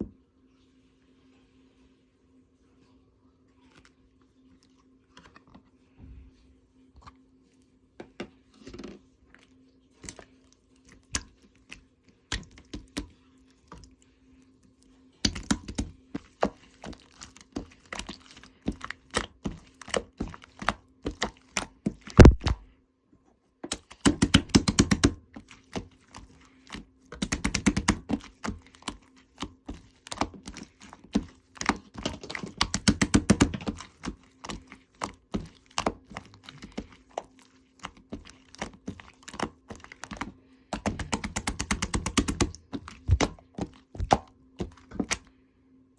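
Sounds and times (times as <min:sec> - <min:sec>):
slime squished by hand: 0:15.2 - 0:22.6, 0:23.7 - 0:45.3.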